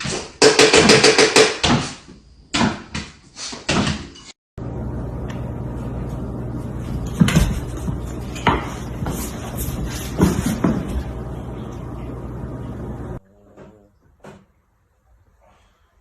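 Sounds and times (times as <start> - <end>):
steady background hum: 4.6 - 16.0.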